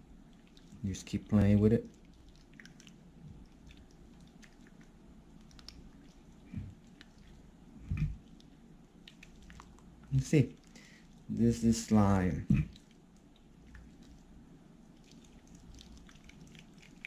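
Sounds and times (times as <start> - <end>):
slime squishing by hand: 0.3 - 17.0.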